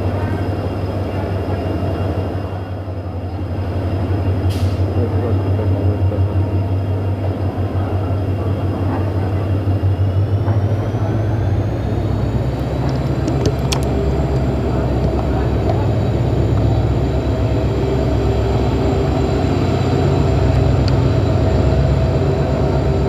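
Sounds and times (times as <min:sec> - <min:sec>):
diesel locomotive engine drone: 0:00.0 - 0:23.0.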